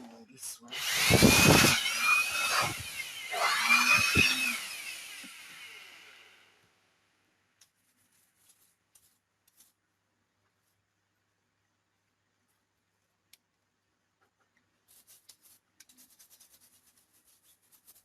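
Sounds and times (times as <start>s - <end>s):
air blower whining: 0.6s - 6.5s.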